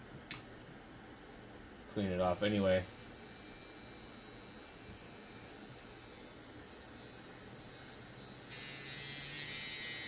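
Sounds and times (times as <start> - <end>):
tattoo machine buzzing: 2.2 - 10.0.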